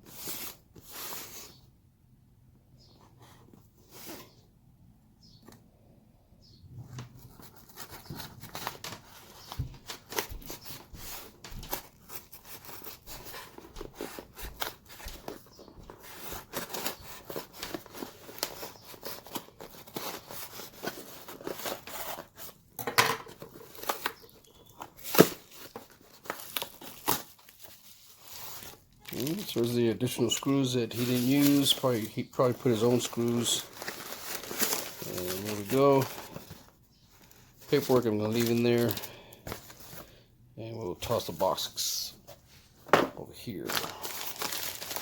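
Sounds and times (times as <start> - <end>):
packaging tearing and crinkling: 23.4 - 29.8, 30.4 - 36.6, 43.6 - 45.0.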